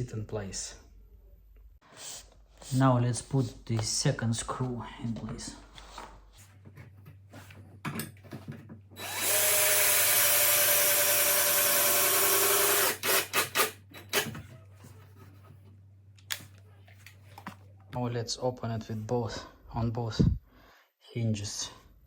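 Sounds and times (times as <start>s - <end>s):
drill motor whining: 9.0s - 13.7s
drill trigger pulses: 9.0s - 14.3s.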